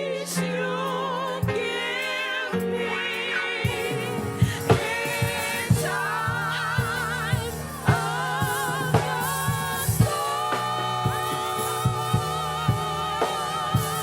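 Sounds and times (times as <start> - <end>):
gospel singers: 0.0 - 14.0
bass: 3.6 - 14.0
drum beat: 3.6 - 14.0.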